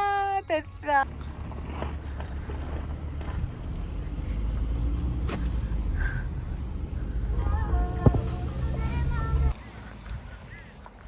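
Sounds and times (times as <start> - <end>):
moving vehicle rumble: 0.0 - 11.0.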